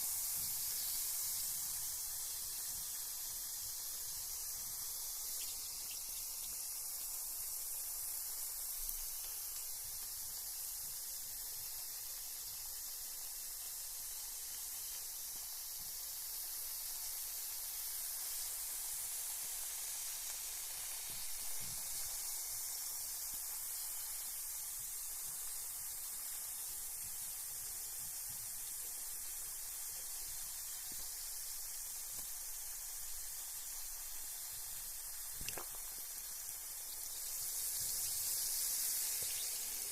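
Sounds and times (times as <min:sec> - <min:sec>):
bath bomb fizzing: 0:00.0 - 0:39.9
faint bubble pops: 0:35.4 - 0:35.9.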